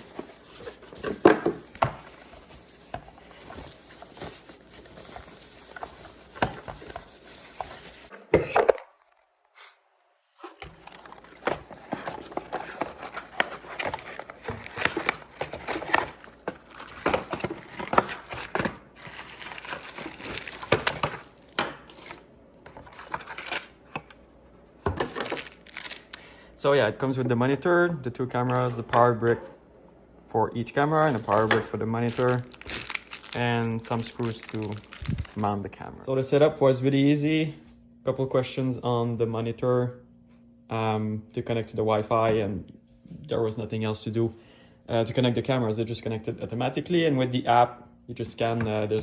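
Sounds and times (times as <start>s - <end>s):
bags and cardboard crinkling: 0.0s - 8.1s, 10.4s - 23.8s, 24.9s - 26.0s, 30.9s - 35.6s.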